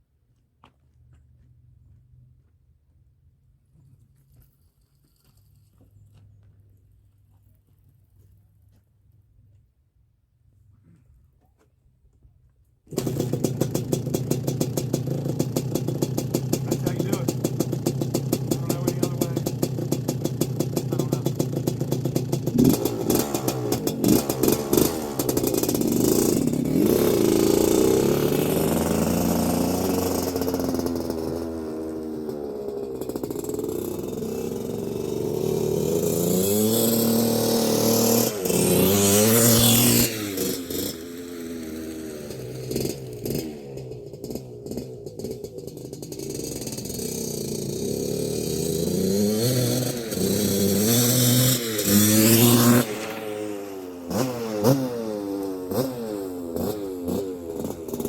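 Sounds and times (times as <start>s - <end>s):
dirt bike engine revving: 12.9s - 58.0s.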